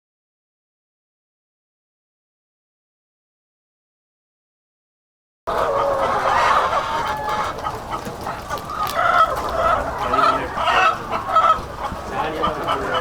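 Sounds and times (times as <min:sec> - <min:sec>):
hens clucking: 0:05.5 - 0:13.0.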